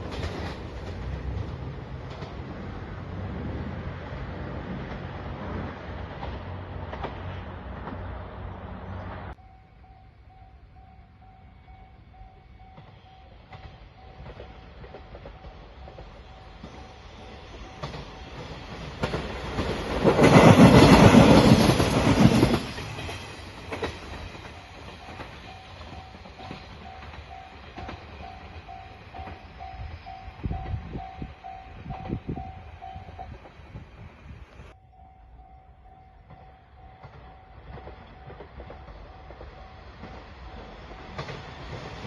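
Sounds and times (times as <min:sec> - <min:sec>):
diesel train passing: 0:00.0 - 0:42.0
level-crossing bell ringing: 0:24.5 - 0:33.4, 0:34.7 - 0:40.0.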